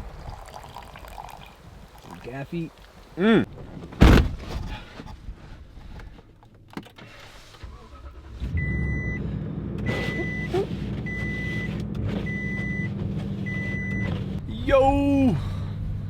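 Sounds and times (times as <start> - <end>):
vehicle engine starting and idling: 7.0 - 14.4
dashboard warning chime beeping: 9.9 - 14.2.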